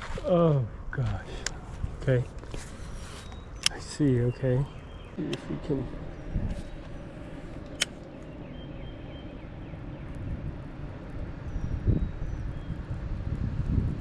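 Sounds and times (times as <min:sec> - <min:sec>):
wind buffeting microphone: 0:00.0 - 0:14.0
sharp click: 0:03.2 - 0:03.8, 0:07.6 - 0:08.3.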